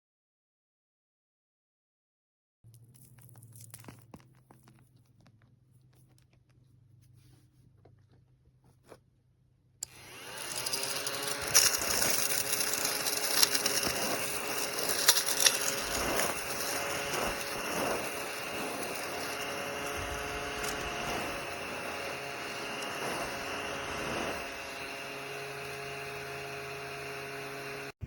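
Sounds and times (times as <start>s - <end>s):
mini vacuum cleaner motor: 9.8s - 28.0s.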